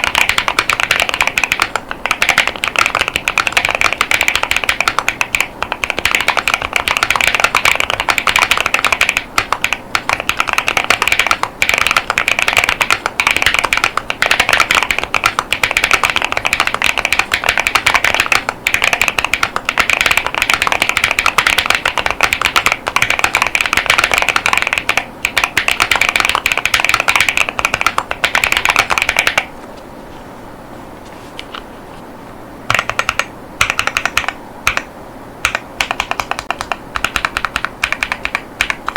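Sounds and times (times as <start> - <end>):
mechanical keyboard typing: 0.0 - 29.5, 32.7 - 38.9.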